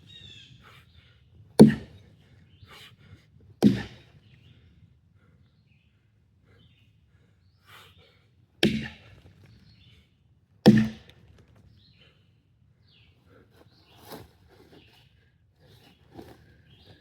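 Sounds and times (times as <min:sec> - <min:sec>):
axe chopping wood: 0:01.6 - 0:02.0, 0:03.6 - 0:04.1, 0:08.6 - 0:09.2, 0:10.6 - 0:11.4.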